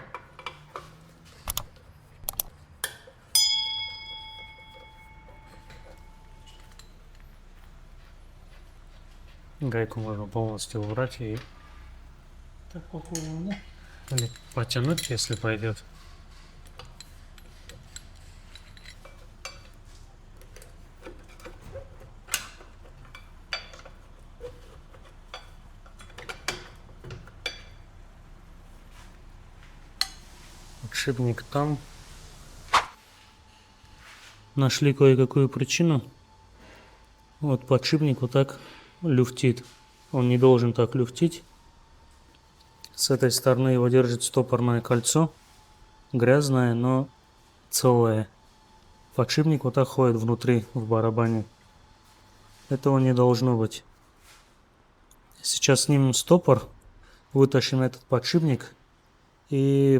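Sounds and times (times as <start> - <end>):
tools clinking on car parts: 2.4 - 7.2, 13.0 - 28.0
ringing metal strike: 3.3 - 7.0.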